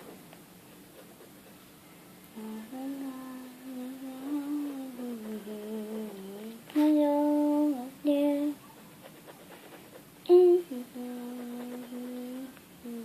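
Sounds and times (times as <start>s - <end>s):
woman humming: 2.4s - 8.6s, 10.3s - 13.0s.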